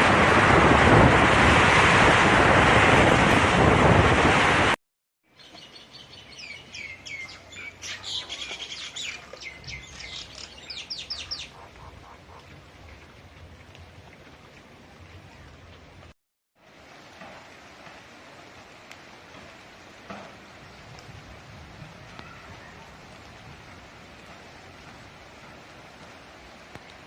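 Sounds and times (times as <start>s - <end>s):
heavy wind and rain: 0.0s - 4.8s, 5.5s - 27.0s
wind buffeting microphone: 0.0s - 4.8s, 20.6s - 26.9s
small birds chirping: 5.4s - 12.4s.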